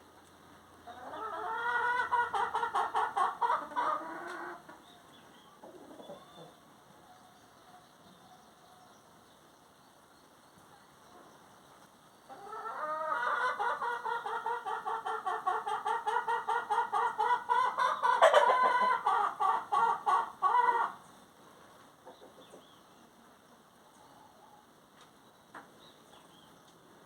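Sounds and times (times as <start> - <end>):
chicken cackling: 0.8 - 6.7, 12.3 - 21.1.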